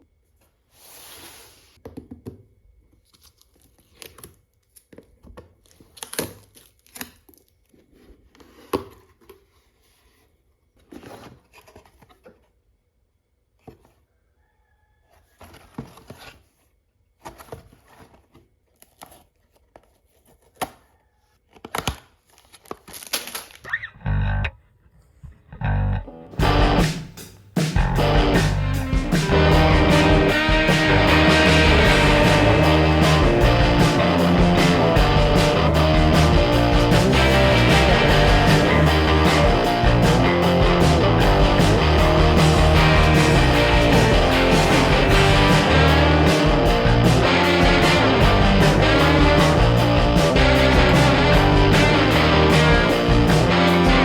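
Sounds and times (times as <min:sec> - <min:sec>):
distorted electric guitar music: 0:25.6 - 0:27.0, 0:27.8 - 0:54.0.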